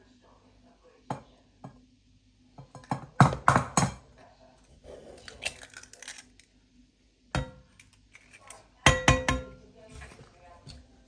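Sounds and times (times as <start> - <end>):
cookware knocking: 2.6 - 4.0, 7.4 - 7.7, 8.9 - 9.6.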